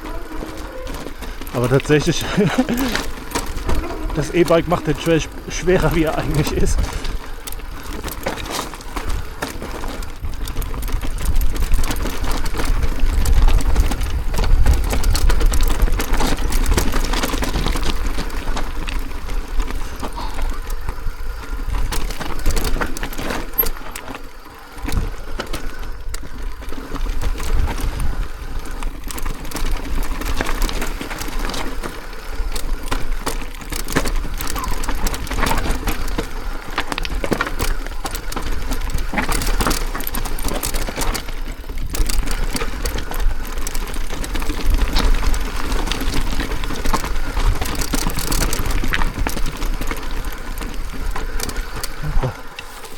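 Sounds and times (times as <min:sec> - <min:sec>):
bike rattling on rocky trail: 0:00.0 - 0:52.9
brakes dragging: 0:00.0 - 0:52.9
wind rumble on microphone: 0:09.0 - 0:22.8, 0:24.8 - 0:30.6.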